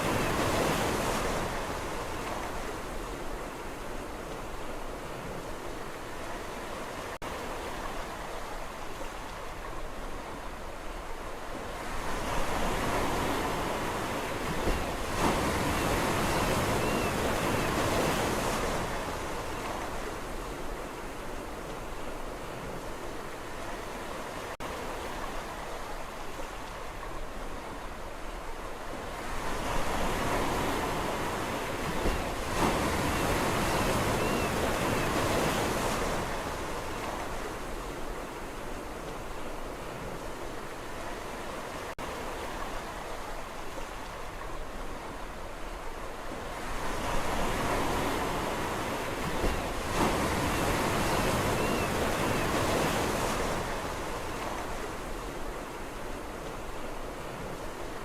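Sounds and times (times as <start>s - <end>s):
sea waves washing onto shore: 0.0s - 58.0s.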